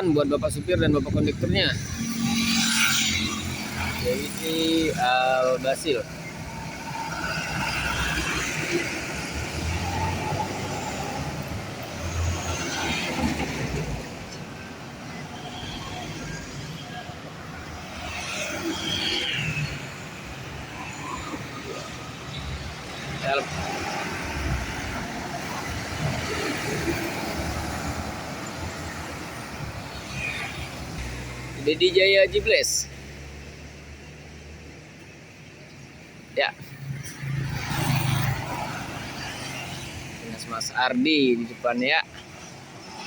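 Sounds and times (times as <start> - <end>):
traffic noise: 0.0 - 43.0
bus engine pulling away: 3.6 - 15.4.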